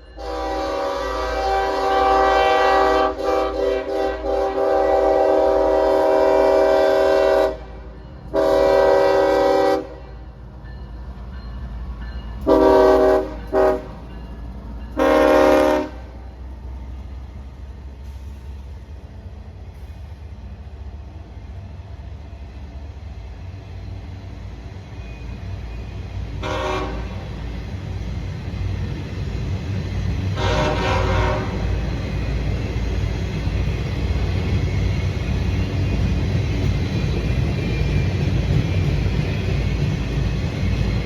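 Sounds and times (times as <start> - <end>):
train rumble: 0.0 - 41.0
locomotive horn blasts: 0.1 - 10.2, 12.4 - 14.0, 15.0 - 16.2, 26.4 - 27.3, 30.4 - 31.8.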